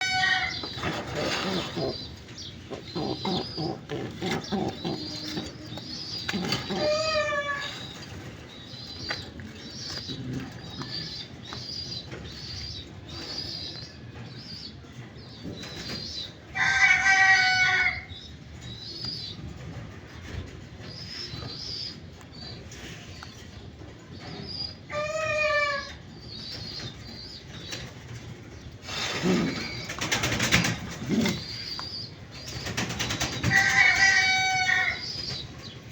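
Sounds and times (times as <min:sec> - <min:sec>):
loud drawn-out bird call: 0:00.0 - 0:07.9
pigeons cooing: 0:00.0 - 0:35.9.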